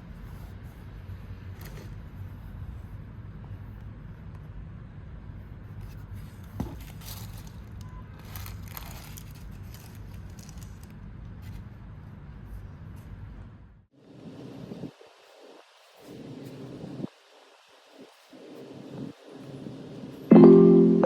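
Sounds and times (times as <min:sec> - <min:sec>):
packaging scraping and rustling: 0:06.2 - 0:11.6.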